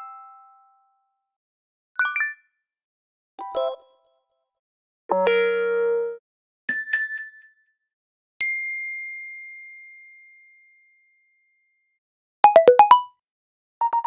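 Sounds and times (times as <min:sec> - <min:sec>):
phone alert chime: 0:12.5 - 0:13.1
phone alert dings: 0:12.5 - 0:13.1.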